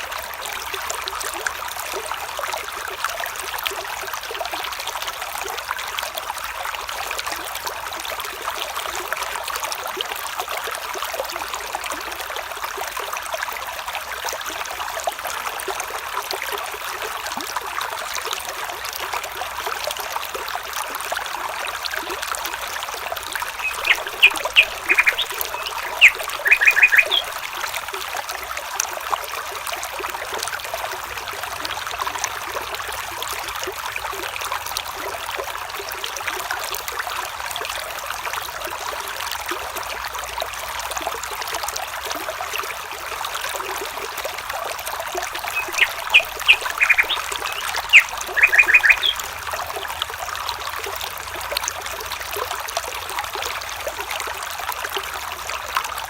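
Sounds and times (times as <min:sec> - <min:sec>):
stream trickling: 0:00.0 - 0:56.0
bird sharp calls: 0:23.3 - 0:27.6, 0:45.2 - 0:49.2.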